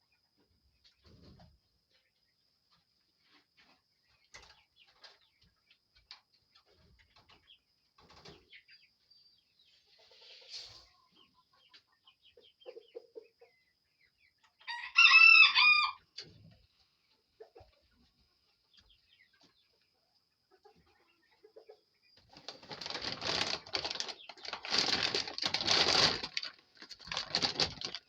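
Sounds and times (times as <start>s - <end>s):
chickens clucking: 0.1s - 14.9s, 15.6s - 28.0s
loud drawn-out chicken call: 14.7s - 16.0s.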